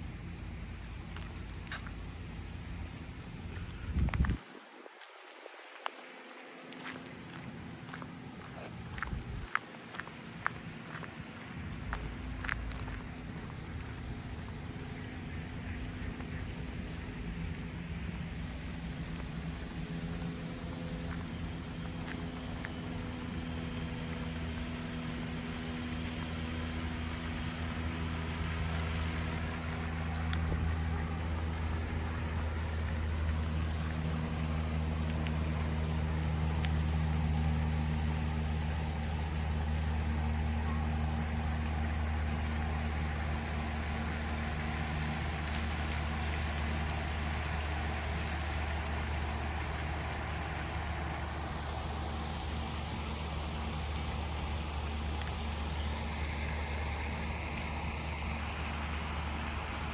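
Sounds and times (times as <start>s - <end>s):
engine running with low hum: 0.0s - 59.9s.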